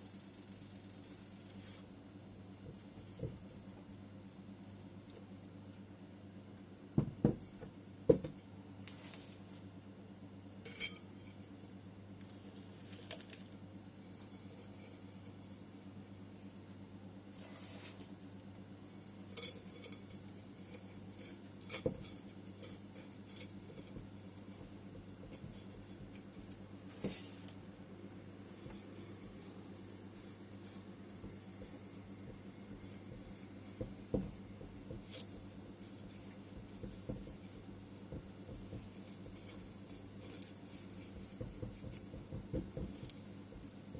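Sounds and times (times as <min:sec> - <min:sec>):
steady low hum: 0:00.0 - 0:43.9
hard objects knocking on ceramic pot: 0:08.1 - 0:08.4.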